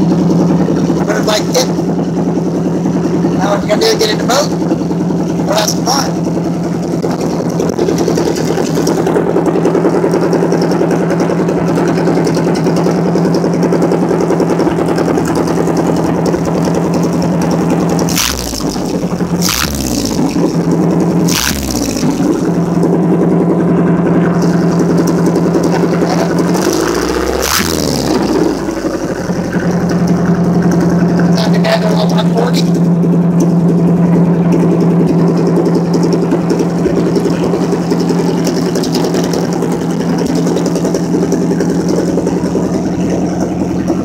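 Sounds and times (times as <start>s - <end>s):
boat engine running: 0.0s - 44.0s.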